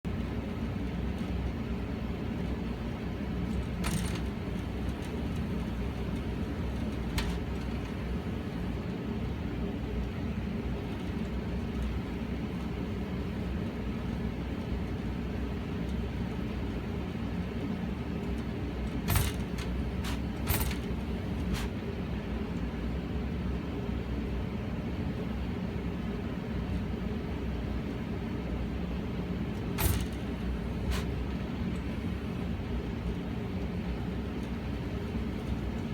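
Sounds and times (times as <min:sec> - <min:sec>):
gas furnace low rumble: 0:00.0 - 0:35.9
sharp bumps inside furnace: 0:29.6 - 0:32.3.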